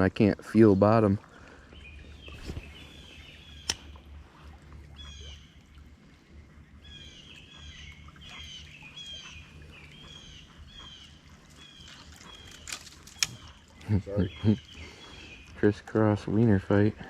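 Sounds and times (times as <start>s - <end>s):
low steady rumble: 0.0s - 17.0s
bird chirping: 1.6s - 4.1s, 6.7s - 16.6s
sharp click: 3.6s - 3.8s.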